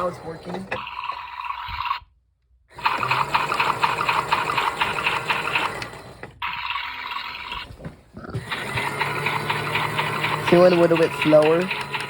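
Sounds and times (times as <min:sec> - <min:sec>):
washing machine motor humming: 0:00.0 - 0:02.0, 0:02.7 - 0:12.0
rapid rattling clicks of drum: 0:08.4 - 0:12.0.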